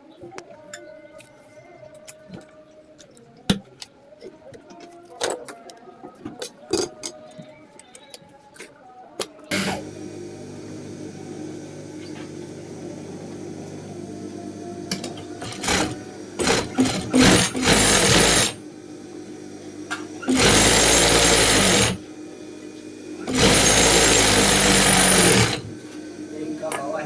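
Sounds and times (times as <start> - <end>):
sewing machine running: 9.5 - 27.0.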